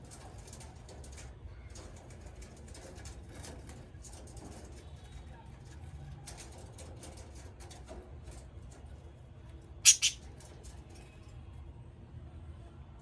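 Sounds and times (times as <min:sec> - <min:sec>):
budgie high-pitched calls: 0:09.8 - 0:10.2
budgies clicking and scratching: 0:09.8 - 0:10.3.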